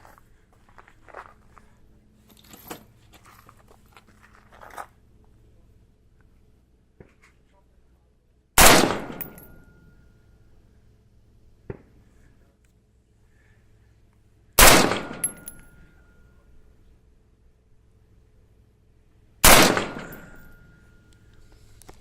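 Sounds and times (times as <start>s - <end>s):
rifle shots with echo: 8.6s - 9.6s, 14.6s - 15.6s, 19.4s - 20.6s.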